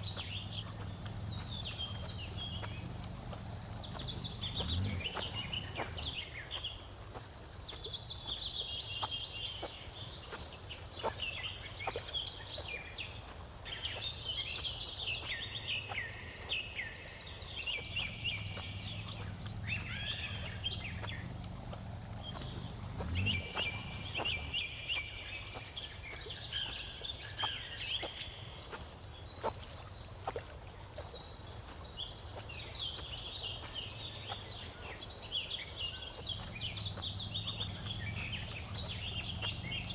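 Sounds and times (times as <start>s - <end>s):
steady low rumble: 0.0s - 6.5s, 17.1s - 25.7s, 36.2s - 39.9s
birds chirping and trilling: 0.0s - 39.9s.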